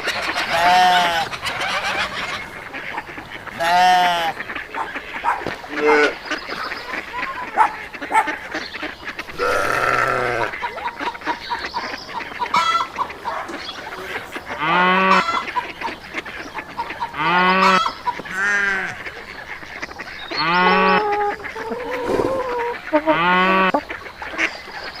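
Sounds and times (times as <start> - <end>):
farm animal cries: 0.1 - 6.3, 7.2 - 8.5, 9.2 - 10.8, 12.5 - 15.9, 16.5 - 19.2, 20.3 - 23.8.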